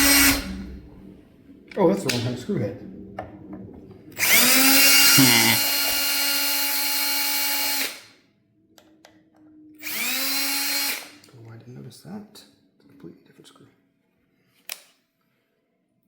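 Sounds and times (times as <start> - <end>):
electric drill whining: 0.0 - 0.6, 4.2 - 8.1, 9.8 - 11.2.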